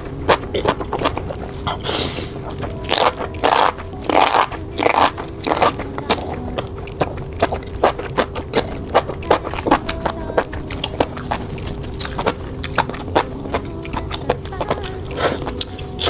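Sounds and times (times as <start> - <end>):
wet biting and chewing: 0.0 - 16.0.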